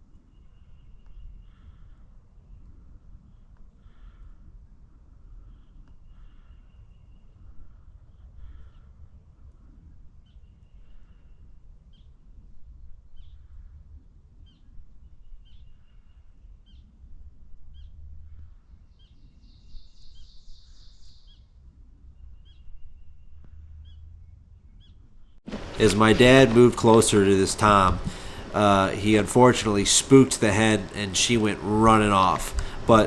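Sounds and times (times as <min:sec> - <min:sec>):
small songbirds chirping: 0:17.7 - 0:29.0
wind rumble on microphone: 0:25.5 - 0:29.0.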